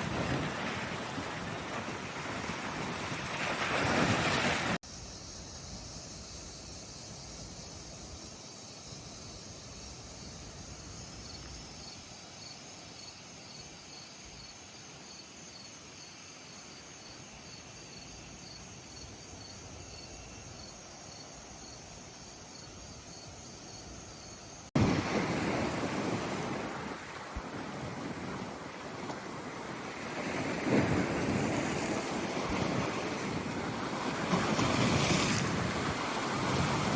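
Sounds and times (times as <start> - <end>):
waves breaking on shore: 0.0 - 4.8, 24.7 - 36.9
wind buffeting microphone: 0.0 - 4.8, 24.8 - 36.9
insects chirping: 0.0 - 36.9
faint hiss: 4.8 - 32.6.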